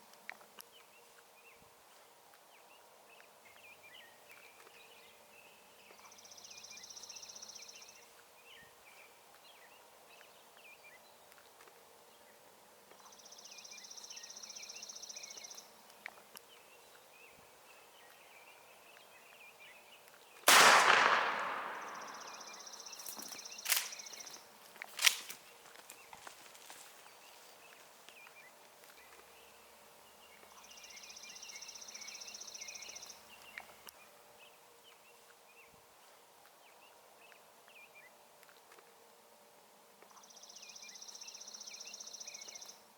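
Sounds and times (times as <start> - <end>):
shotgun shot: 20.5 - 24.0
sharp cracks: 20.5 - 25.4.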